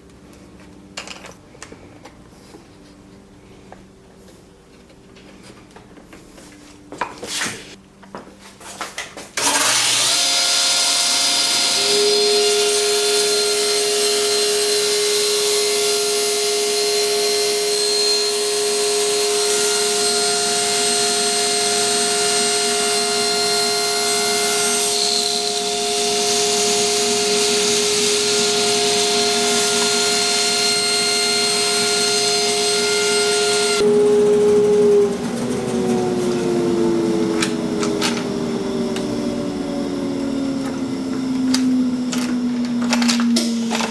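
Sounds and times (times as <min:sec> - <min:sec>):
table saw running with whine: 0:09.4 - 0:43.9.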